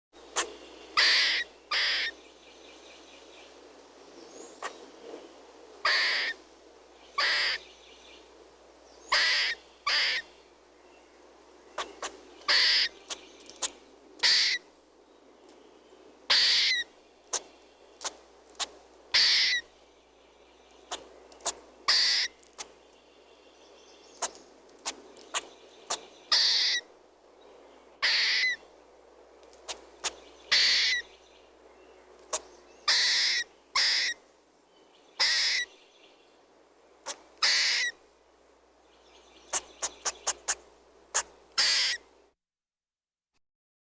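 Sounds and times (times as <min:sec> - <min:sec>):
squirrel chirping: 0:00.4 - 0:02.2, 0:05.8 - 0:06.4, 0:07.2 - 0:07.6, 0:09.1 - 0:10.3, 0:11.8 - 0:14.6, 0:16.3 - 0:19.7, 0:20.8 - 0:22.7, 0:24.0 - 0:26.9, 0:28.0 - 0:28.6, 0:29.6 - 0:31.2, 0:32.2 - 0:34.2, 0:35.2 - 0:35.8, 0:37.0 - 0:38.0, 0:39.2 - 0:42.0.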